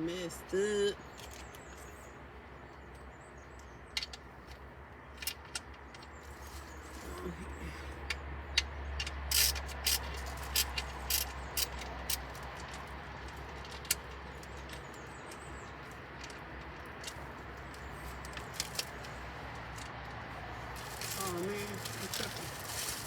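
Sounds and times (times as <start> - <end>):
sharp clicks and knocks: 3.6 - 6.3, 8.0 - 20.2.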